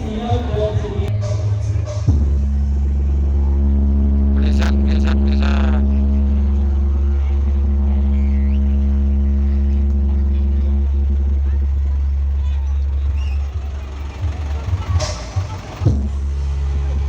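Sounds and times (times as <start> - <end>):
loud deep bass drone: 0.0 - 17.0
voices shouting: 11.2 - 15.9.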